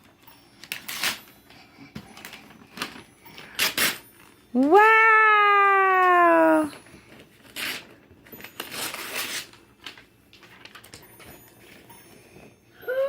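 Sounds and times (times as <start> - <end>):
wrapping paper rustling and tearing: 0.6 - 1.2, 2.1 - 4.0, 5.7 - 11.3
child saying wow: 4.6 - 6.8.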